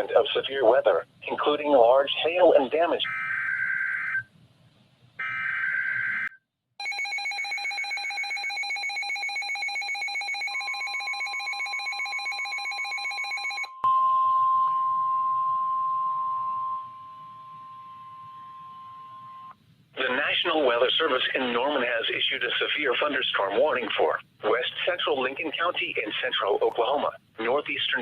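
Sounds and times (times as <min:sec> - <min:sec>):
rapid pulsing electronic alarm: 0:05.2 - 0:13.8
steady single-pitch alarm tone: 0:05.2 - 0:19.6.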